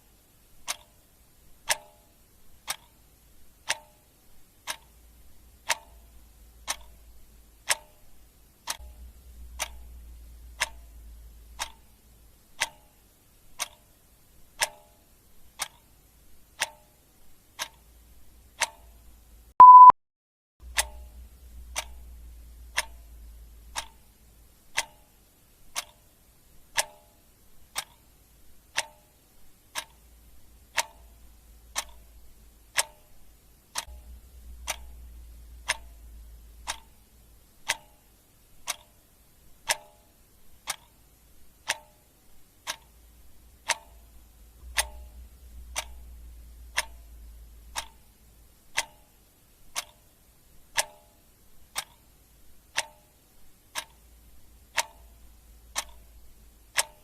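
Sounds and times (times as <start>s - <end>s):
clock ticking: 0.5s - 19.9s, 20.6s - 57.0s
faint low rumble: 4.3s - 14.5s, 20.6s - 24.8s, 27.5s - 39.7s, 40.4s - 50.8s, 53.4s - 56.8s.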